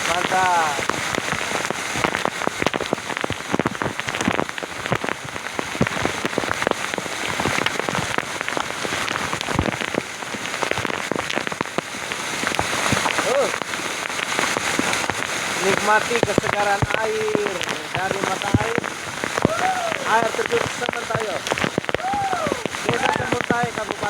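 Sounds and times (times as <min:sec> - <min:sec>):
waterfall splashing: 0:00.0 - 0:24.0.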